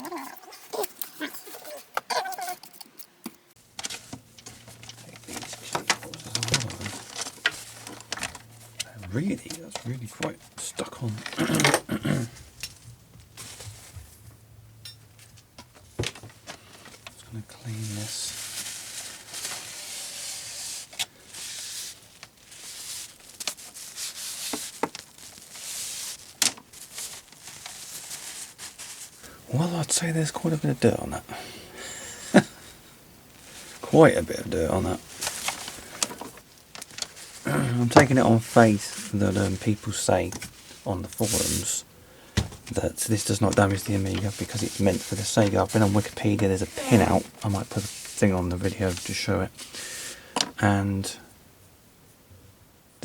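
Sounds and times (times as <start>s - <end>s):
clicks and scrapes of handling: 0.0s - 10.4s, 34.9s - 41.7s
cloth scrubbing plastic joystick: 42.6s - 49.8s.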